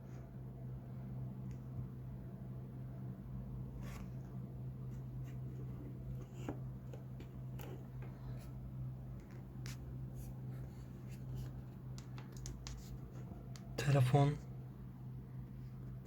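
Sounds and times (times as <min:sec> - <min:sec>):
steady low hum: 0:00.0 - 0:16.0
faint clicks and taps: 0:11.1 - 0:13.8.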